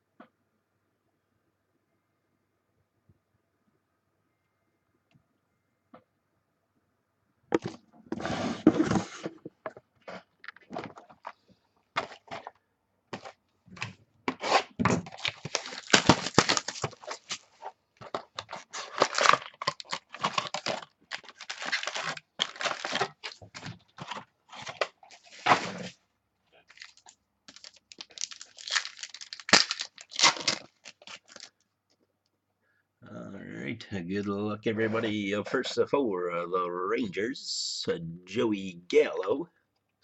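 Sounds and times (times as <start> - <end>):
packaging tearing and crinkling: 14.3 - 26.0, 26.7 - 31.5.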